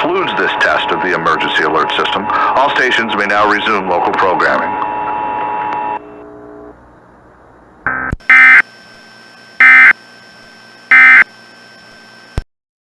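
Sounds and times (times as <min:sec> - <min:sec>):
brief tone: 0:08.3 - 0:08.6, 0:09.6 - 0:10.0, 0:10.9 - 0:12.2
screechy digital data tones: 0:09.6 - 0:10.0, 0:10.9 - 0:12.0.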